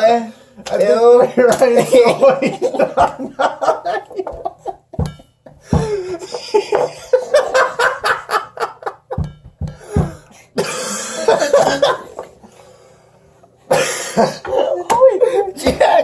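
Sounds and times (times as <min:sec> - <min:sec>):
laughter: 0:01.1 - 0:05.0, 0:06.0 - 0:09.2, 0:10.6 - 0:12.4, 0:13.7 - 0:16.0
man coughing: 0:10.0 - 0:12.0, 0:13.7 - 0:16.0.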